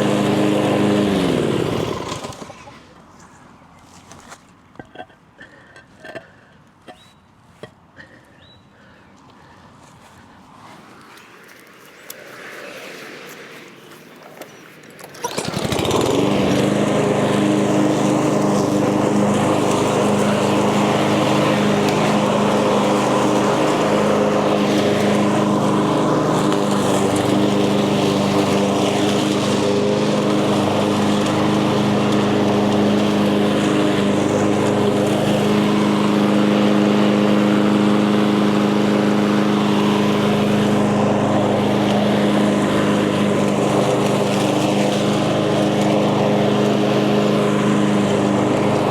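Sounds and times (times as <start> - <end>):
lawn mower engine running: 0.0 - 2.8, 13.9 - 48.9.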